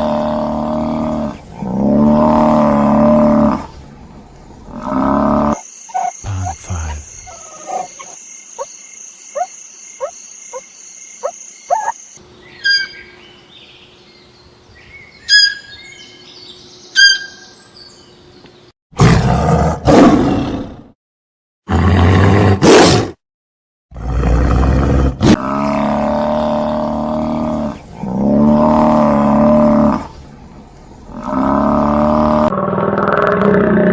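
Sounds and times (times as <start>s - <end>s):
long drawn-out pitched calls: 4.7s - 8.7s, 11.2s - 13.2s, 15.2s - 16.1s
animal calls and chirps: 4.8s - 18.1s
loud rough animal calls: 25.3s - 30.3s, 31.1s - 33.9s.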